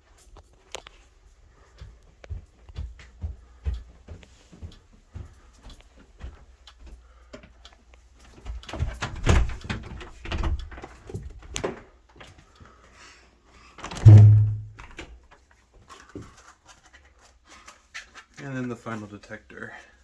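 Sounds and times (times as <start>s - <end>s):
rustling and clicking handling noises: 0.0s - 13.0s, 13.7s - 20.0s
loud low thump: 14.0s - 14.9s.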